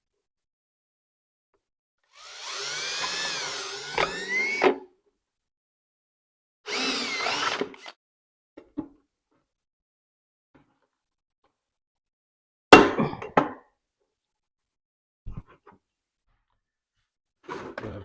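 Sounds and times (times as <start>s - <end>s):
power drill motor whine: 2.1s - 4.8s, 6.7s - 8.0s.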